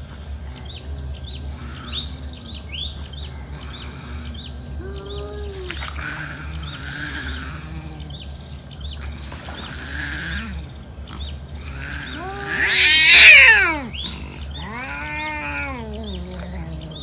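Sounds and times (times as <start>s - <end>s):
cat yowling: 11.6s - 17.0s.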